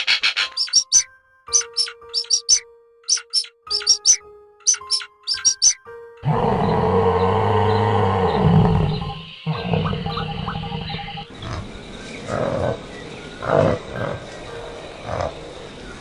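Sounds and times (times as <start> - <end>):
animal calling: 0.0 - 12.8.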